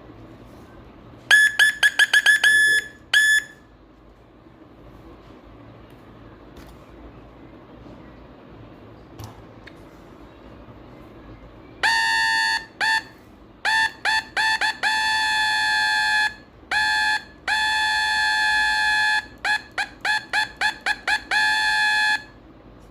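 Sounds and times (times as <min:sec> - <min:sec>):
buzzing reedy oscillator tone: 0:11.8 - 0:22.4.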